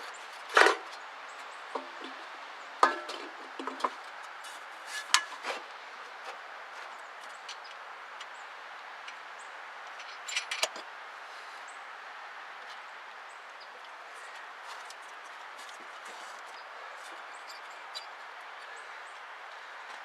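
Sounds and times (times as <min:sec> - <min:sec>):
outdoor background noise: 0:00.0 - 0:20.0.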